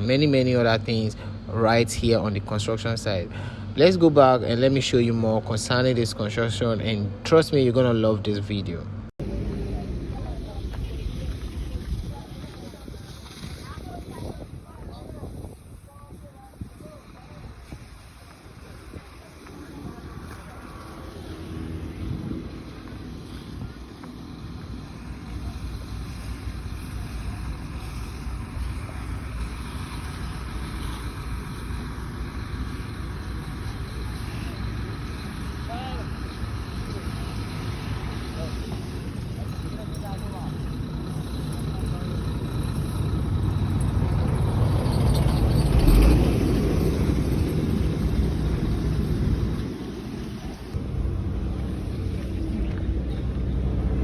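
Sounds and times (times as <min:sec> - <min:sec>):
vehicle engine rumbling: 0:00.0 - 0:54.0
wind on microphone: 0:09.3 - 0:33.8, 0:40.5 - 0:54.0.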